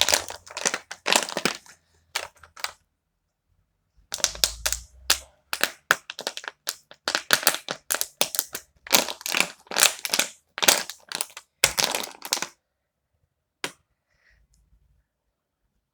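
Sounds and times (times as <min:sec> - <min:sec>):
crisp crunching and crackling: 0:00.0 - 0:02.7, 0:04.1 - 0:12.5.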